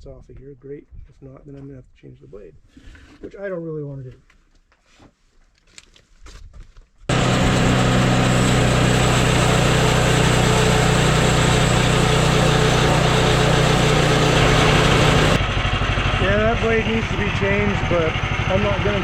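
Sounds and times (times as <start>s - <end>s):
band blade cutting log: 7.1s - 15.4s
sawmill engine running: 7.1s - 19.0s.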